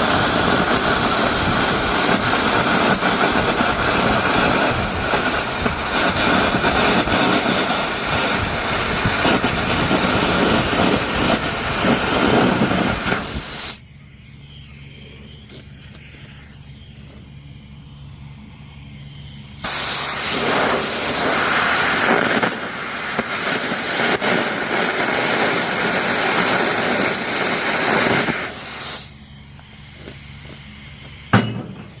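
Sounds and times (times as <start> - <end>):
harsh hiss of arc gouging: 0.0 - 13.8, 19.2 - 29.4
low steady hum: 13.8 - 21.4.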